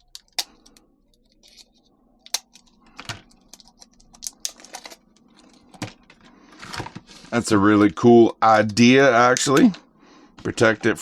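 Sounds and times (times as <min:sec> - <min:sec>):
plastic parts rustling: 0:00.0 - 0:07.2.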